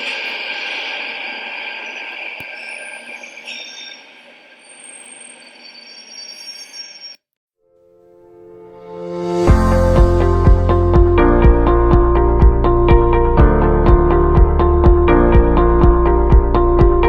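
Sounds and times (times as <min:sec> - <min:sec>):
train wheel squeal: 0:00.0 - 0:07.2.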